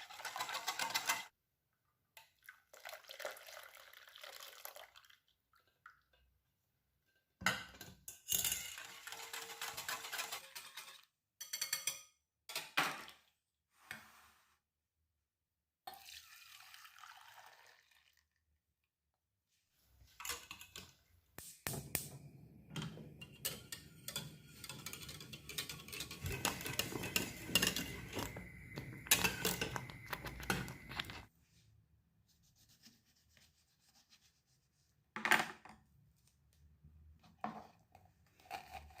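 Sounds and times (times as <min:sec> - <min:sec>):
utensils clinking against dishes: 0:07.7 - 0:12.8, 0:22.8 - 0:31.2.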